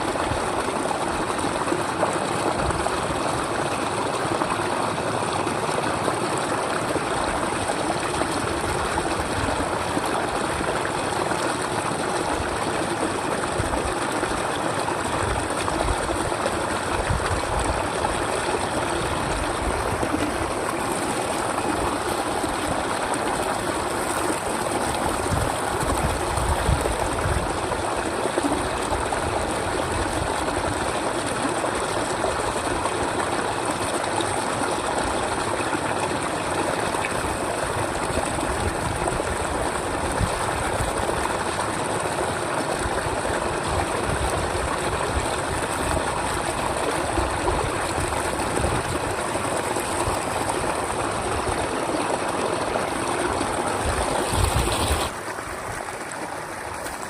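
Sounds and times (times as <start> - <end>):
running water: 0.0 - 57.0.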